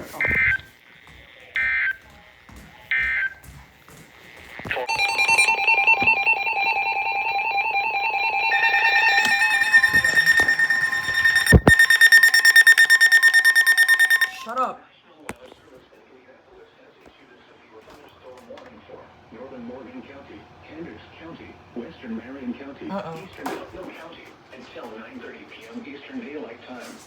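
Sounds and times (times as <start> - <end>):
digital data tone bursts: 4.7 - 14.5
pulsing alarm tone: 4.7 - 14.6
two-tone attention signal: 4.7 - 14.6.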